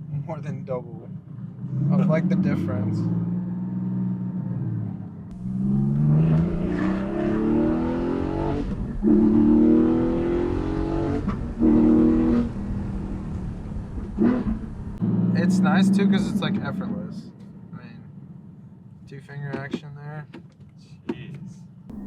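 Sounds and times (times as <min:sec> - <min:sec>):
car engine accelerating hard: 0:01.3 - 0:17.2.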